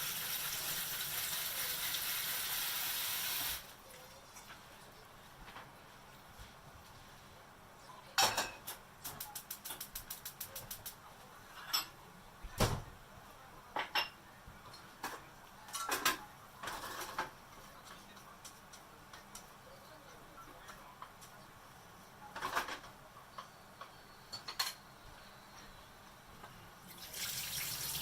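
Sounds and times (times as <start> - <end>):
cookware and utensils clattering: 8.2 - 10.9, 11.5 - 12.0, 13.7 - 19.5, 22.4 - 23.0, 24.3 - 24.9.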